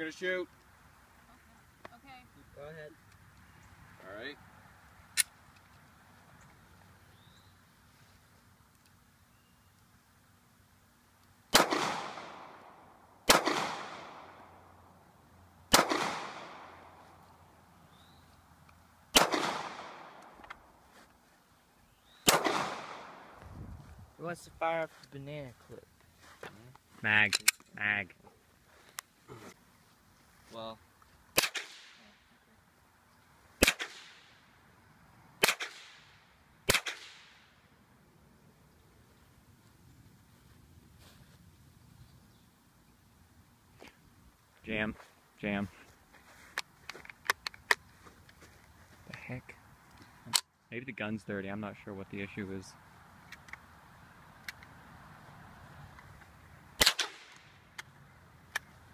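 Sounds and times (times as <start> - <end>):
gunshots with echo: 11.6 - 12.6, 13.3 - 14.4, 15.7 - 16.8, 19.2 - 20.2, 22.3 - 23.3.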